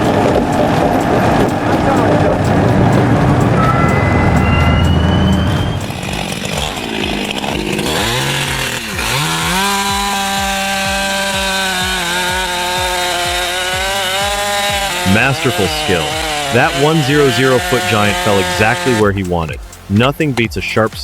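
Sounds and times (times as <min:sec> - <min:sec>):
low noisy rumble: 0:00.0 - 0:08.9
chainsaw cutting a tree: 0:05.8 - 0:19.9.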